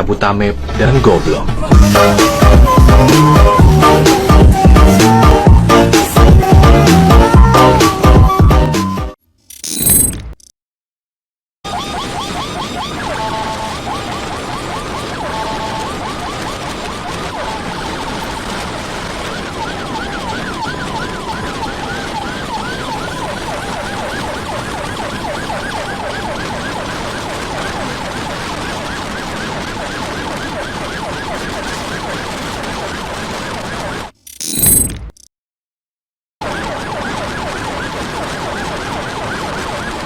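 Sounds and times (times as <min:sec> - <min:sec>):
electronic sirens yelping: 0:01.7 - 0:09.1, 0:11.7 - 0:34.8, 0:36.4 - 0:40.0
two-tone siren: 0:01.8 - 0:10.1, 0:11.7 - 0:34.9, 0:36.4 - 0:40.0
road and wind noise: 0:11.7 - 0:35.0.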